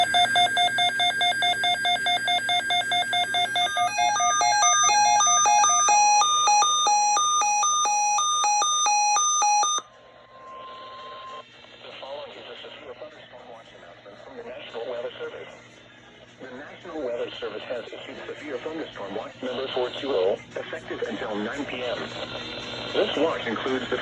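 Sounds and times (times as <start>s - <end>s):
electronic alert alarm beeping: 0.0s - 11.4s.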